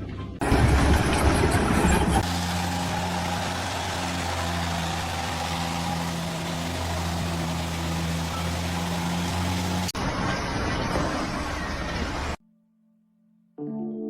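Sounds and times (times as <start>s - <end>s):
engine running steadily: 0.4s - 10.1s.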